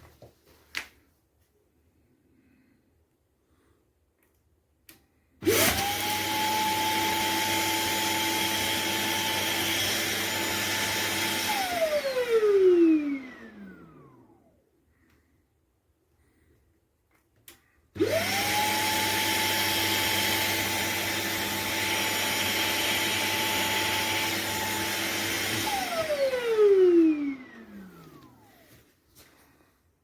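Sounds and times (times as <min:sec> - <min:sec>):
vacuum motor whining: 0:05.4 - 0:14.5, 0:18.0 - 0:28.8.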